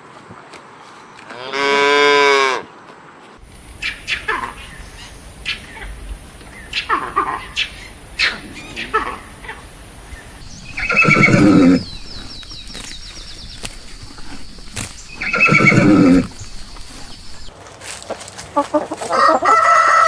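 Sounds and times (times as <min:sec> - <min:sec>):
horse neighing: 0:03.4 - 0:12.4, 0:13.7 - 0:17.5
short falling animal calls: 0:03.4 - 0:12.9, 0:14.2 - 0:17.5.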